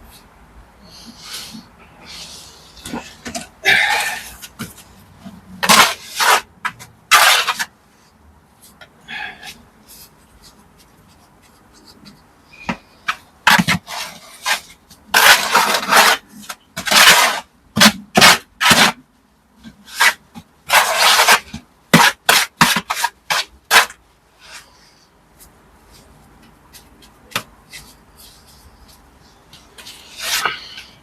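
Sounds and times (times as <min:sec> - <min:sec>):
hand tool scraping mortar: 0:01.0 - 0:07.7, 0:11.7 - 0:19.0, 0:19.6 - 0:24.7, 0:29.6 - 0:31.0.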